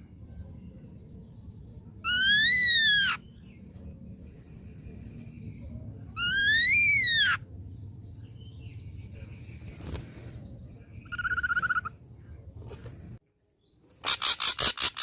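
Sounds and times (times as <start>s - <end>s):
bird whistled calls: 6.2s - 7.4s.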